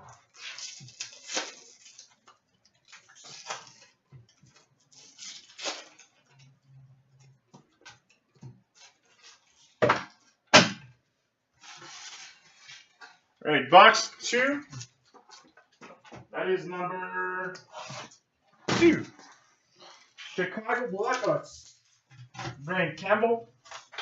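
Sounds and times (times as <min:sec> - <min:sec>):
card packaging rustling: 0:00.2 - 0:06.6.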